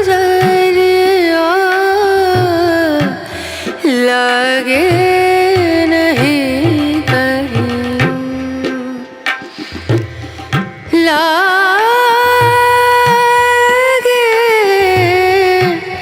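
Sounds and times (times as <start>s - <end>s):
person singing: 0.0s - 9.7s, 10.9s - 16.0s
repeating drum beat: 1.7s - 11.2s.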